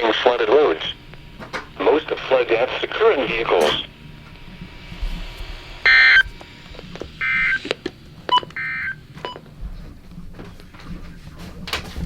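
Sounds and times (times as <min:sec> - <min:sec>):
buzzy data tone bursts: 0:00.0 - 0:09.0.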